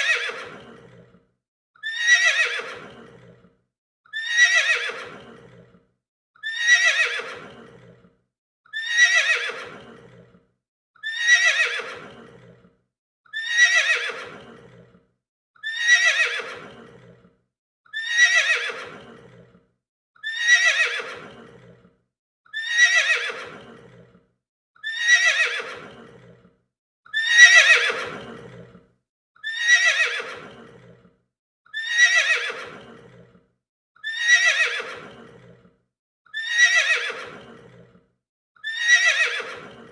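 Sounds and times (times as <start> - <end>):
horse whinnying: 1.8 - 3.4, 4.1 - 5.7, 6.4 - 8.0, 8.7 - 10.2, 11.0 - 12.6, 13.3 - 14.9, 15.6 - 17.2, 17.9 - 19.6, 20.2 - 21.8, 22.6 - 24.1, 24.8 - 26.4, 27.1 - 28.8, 29.4 - 31.0, 31.8 - 33.3, 34.0 - 35.5, 36.4 - 37.9, 38.6 - 39.9.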